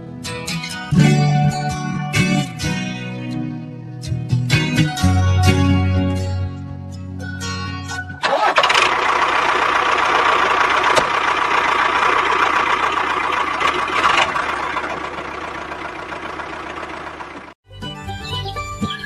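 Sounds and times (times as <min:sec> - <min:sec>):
guitar music: 0:00.0 - 0:08.2.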